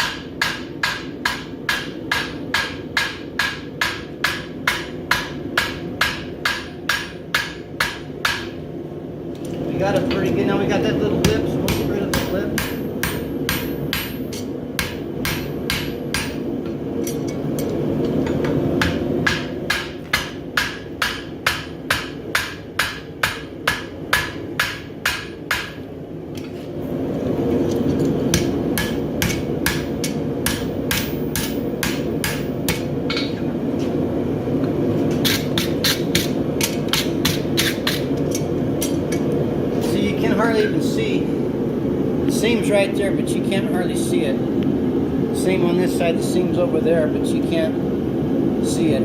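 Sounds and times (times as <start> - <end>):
hammer striking steel on anvil: 0.0 - 8.6, 11.2 - 26.5, 27.7 - 33.5, 35.1 - 39.3.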